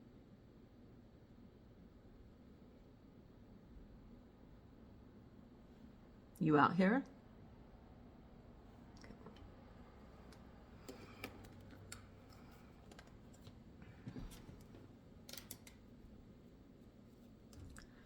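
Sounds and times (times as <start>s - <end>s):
faint clicks and light taps: 8.9s - 15.9s.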